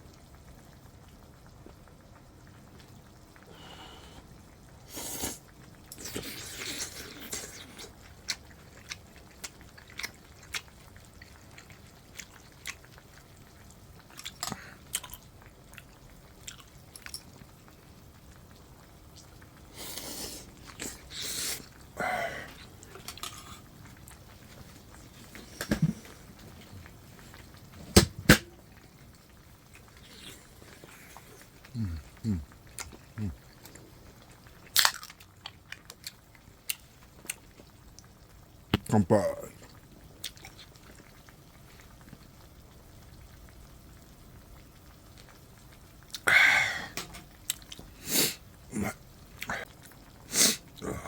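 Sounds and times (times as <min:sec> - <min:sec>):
person chewing and slurping: 0:04.9 - 0:10.7, 0:19.2 - 0:24.2, 0:29.8 - 0:33.8.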